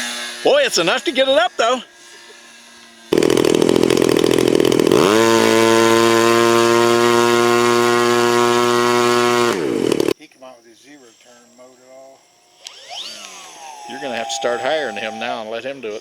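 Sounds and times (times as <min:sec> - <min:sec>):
small engine revving: 0:02.8 - 0:10.2, 0:12.6 - 0:15.5.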